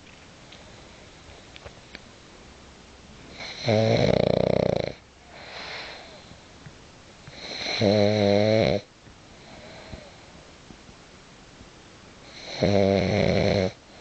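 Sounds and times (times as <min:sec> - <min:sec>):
dog snoring: 0:03.3 - 0:06.3, 0:07.3 - 0:10.3, 0:12.3 - 0:14.0
soft breath: 0:05.2 - 0:06.6, 0:09.3 - 0:10.5.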